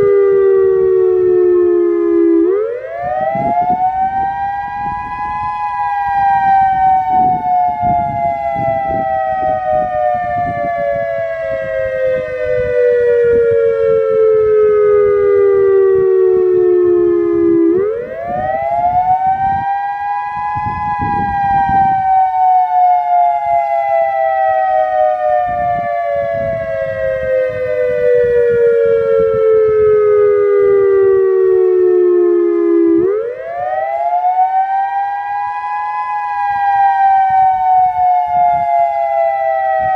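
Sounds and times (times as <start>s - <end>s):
two-tone warning siren: 0.0s - 39.9s.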